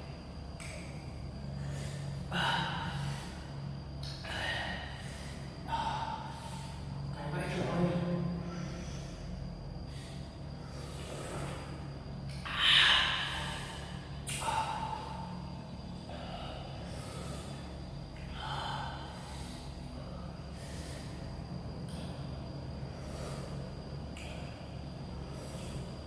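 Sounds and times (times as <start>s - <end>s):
faint low hum: 0.0s - 26.0s
man breathing sharply: 1.5s - 7.1s, 8.4s - 26.0s.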